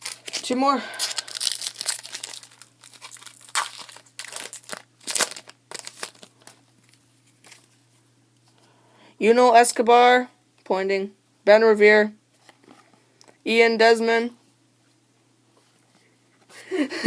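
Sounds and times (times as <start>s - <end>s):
card pack wrapper tearing and crinkling: 0.0s - 7.7s.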